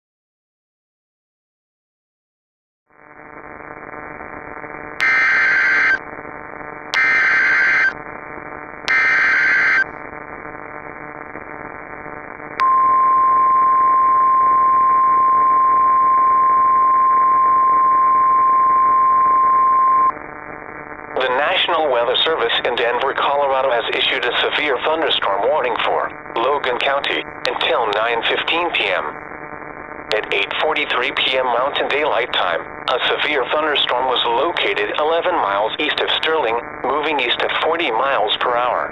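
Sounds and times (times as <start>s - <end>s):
steady warning alarm tone: 5.0s - 6.0s, 7.0s - 7.9s, 8.9s - 9.9s, 12.6s - 20.1s
radio hiss: 21.1s - 38.9s.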